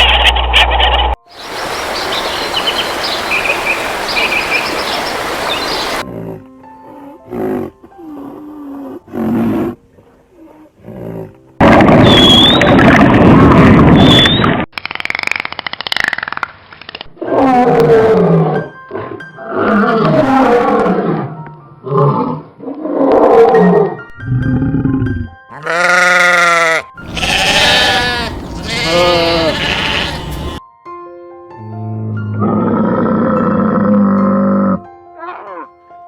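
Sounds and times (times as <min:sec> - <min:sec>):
long pitched animal call: 0:25.6 - 0:30.6
animal calls grunts and roars: 0:31.9 - 0:35.7.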